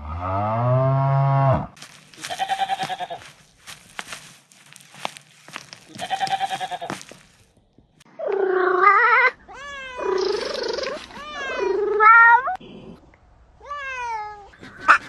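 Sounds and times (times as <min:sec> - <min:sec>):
cat meowing: 0:08.7 - 0:12.6, 0:13.6 - 0:14.6.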